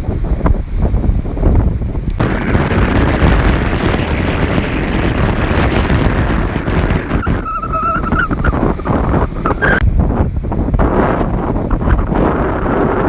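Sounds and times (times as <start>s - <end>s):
wind buffeting microphone: 0.0s - 13.0s
surf rolling: 2.2s - 9.8s
high wavering call: 7.1s - 9.8s.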